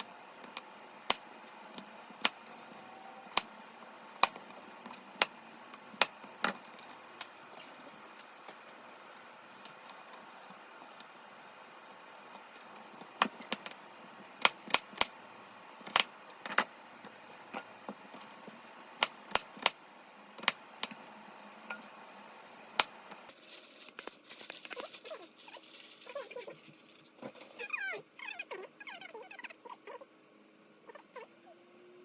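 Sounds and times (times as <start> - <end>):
small hard objects clicking together: 23.3 - 27.5.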